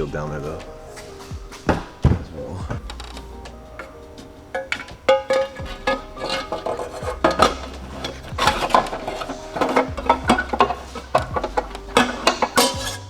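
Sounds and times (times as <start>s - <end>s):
metal tools clinking and clanking: 0.0s - 13.0s.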